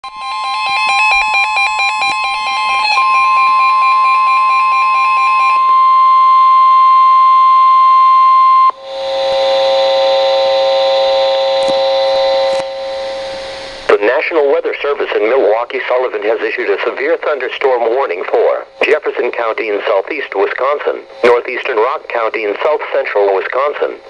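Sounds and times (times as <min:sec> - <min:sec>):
stepping electronic tone pattern: 0:00.0 - 0:07.6.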